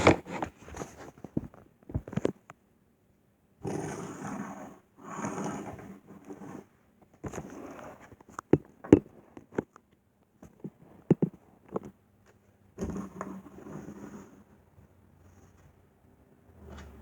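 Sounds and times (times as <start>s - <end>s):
objects knocking on hard surface: 8.4s - 9.7s, 10.4s - 11.9s.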